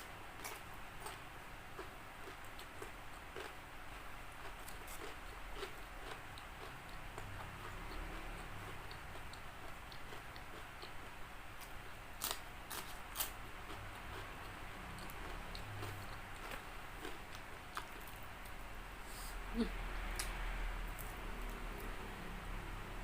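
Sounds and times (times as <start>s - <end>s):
chewing crispy fried chicken: 0.4s - 18.6s.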